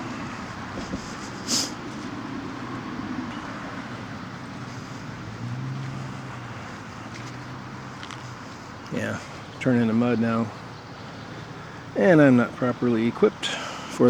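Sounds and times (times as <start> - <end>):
short brushing sound: 0.8 - 2.1.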